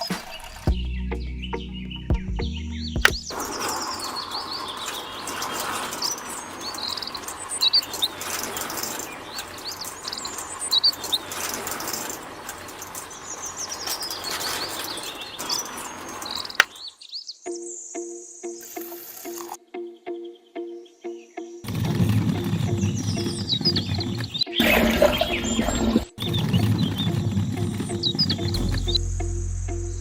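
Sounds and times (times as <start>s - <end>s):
small birds chirping: 0.0s - 30.0s
steady background noise: 3.0s - 16.9s.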